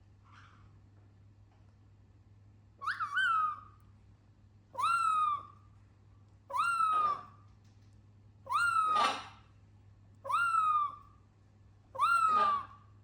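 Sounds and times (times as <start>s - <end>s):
pet bird whistling call: 2.8s - 3.7s, 12.0s - 12.7s.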